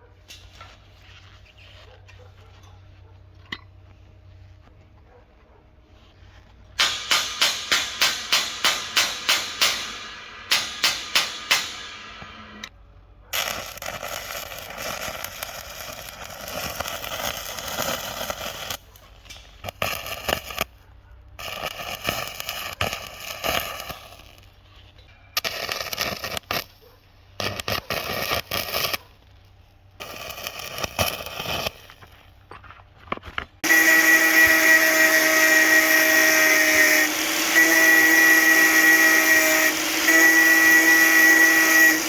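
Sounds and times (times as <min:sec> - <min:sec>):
angle grinder grinding steel: 0:33.6 - 0:42.0.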